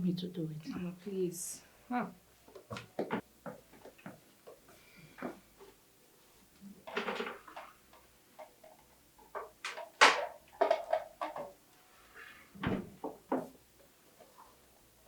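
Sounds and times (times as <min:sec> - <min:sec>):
kitchen knocks and clatters: 0:06.8 - 0:11.6.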